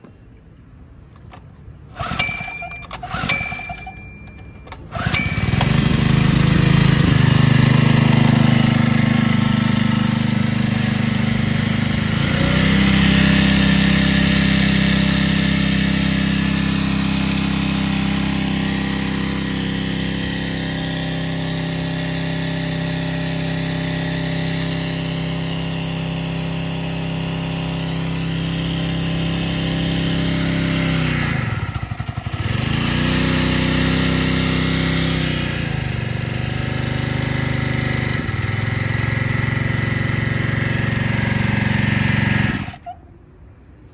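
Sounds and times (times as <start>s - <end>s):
pull-start cord pulls: 1.1s - 21.5s
small engine running: 1.9s - 42.9s.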